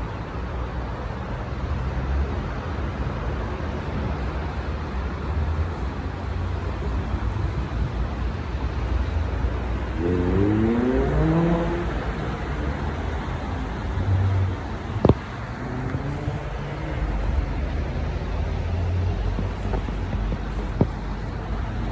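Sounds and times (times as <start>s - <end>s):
road traffic: 0.0s - 21.9s
vehicle speeding up: 9.8s - 12.8s.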